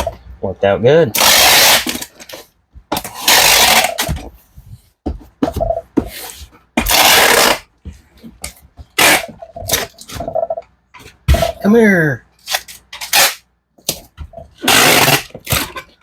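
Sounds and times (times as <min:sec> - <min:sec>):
packing tape pulled off roll: 0:01.2 - 0:02.4, 0:06.9 - 0:07.6, 0:12.4 - 0:13.4, 0:14.6 - 0:15.8.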